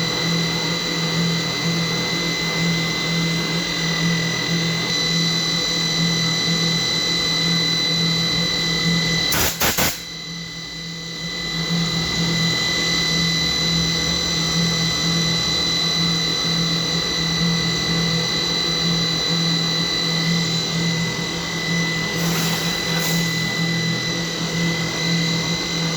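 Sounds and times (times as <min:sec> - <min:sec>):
milling machine whine: 0:00.0 - 0:25.9
loud rasping burst: 0:09.3 - 0:10.1.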